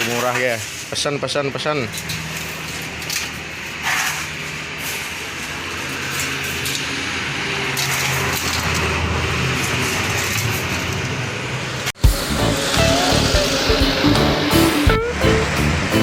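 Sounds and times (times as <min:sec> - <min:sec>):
engine running: 0:05.0 - 0:16.0
rushing noise: 0:09.8 - 0:16.0.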